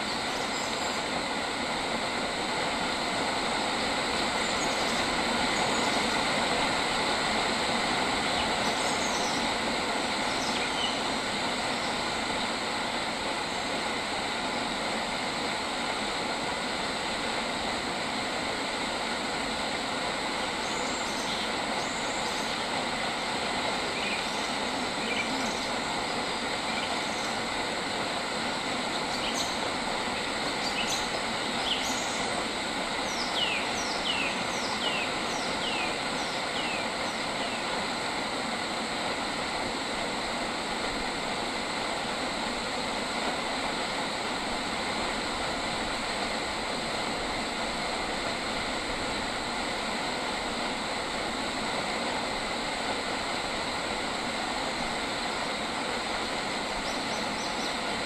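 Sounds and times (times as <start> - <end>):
dense hiss of ambient noise: 0.0 - 58.0
bird calling: 23.8 - 27.4.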